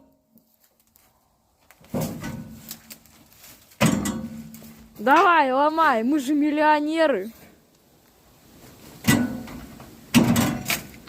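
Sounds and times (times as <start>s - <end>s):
microwave oven being banged: 9.1s - 10.7s.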